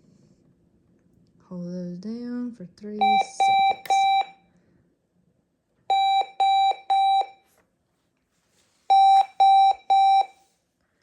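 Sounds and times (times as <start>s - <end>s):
alarm clock beeping: 3.0s - 4.4s, 5.9s - 7.4s, 8.9s - 10.4s.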